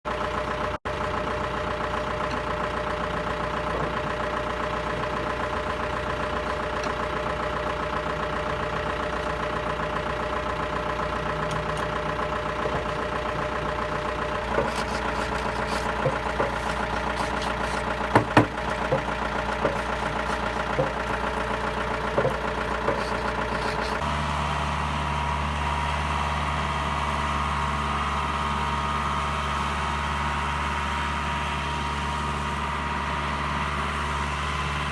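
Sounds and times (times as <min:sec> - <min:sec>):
tractor diesel engine running: 0:00.1 - 0:34.9
sharp knocks and clanks: 0:14.5 - 0:21.2, 0:22.1 - 0:24.0.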